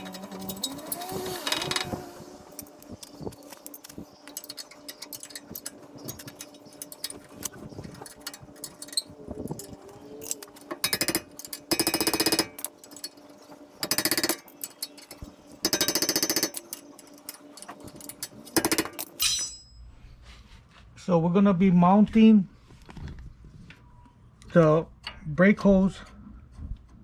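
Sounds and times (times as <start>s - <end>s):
impact wrench hammering: 0.0s - 19.8s
tool clicks and clinks: 0.0s - 19.8s.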